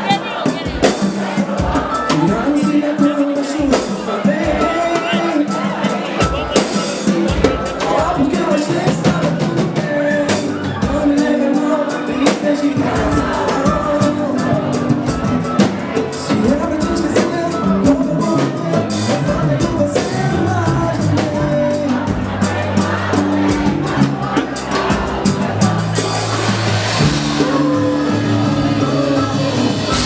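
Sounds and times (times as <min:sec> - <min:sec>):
drum and percussion strokes: 0:00.0 - 0:30.0
live band playing: 0:00.0 - 0:30.0
singing: 0:00.0 - 0:30.0.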